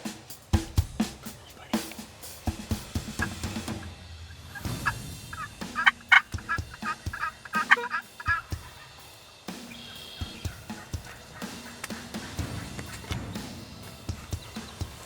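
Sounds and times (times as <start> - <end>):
turkey gobbling: 3.0 - 15.0.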